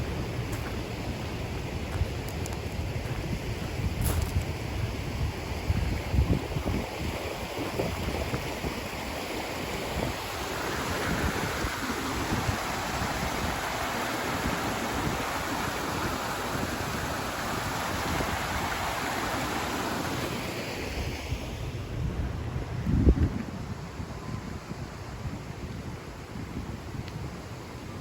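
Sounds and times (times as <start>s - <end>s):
wind buffeting microphone: 0.0s - 19.8s, 21.0s - 28.0s
rushing water: 5.4s - 21.6s.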